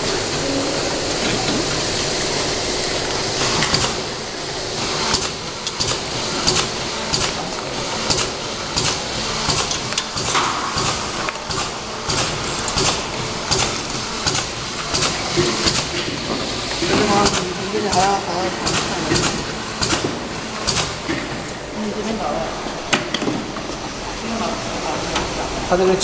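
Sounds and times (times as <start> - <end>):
machine whirring: 0.0 - 26.0
sharp machine clicks: 5.1 - 7.4, 8.0 - 16.0, 17.2 - 20.0, 20.6 - 21.1.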